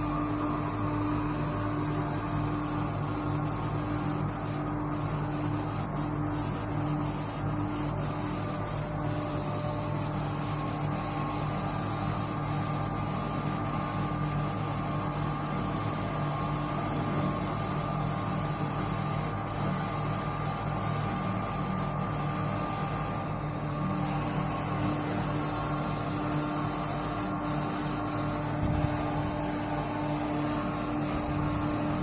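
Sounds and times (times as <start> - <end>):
router spindle whine: 0.0 - 32.0.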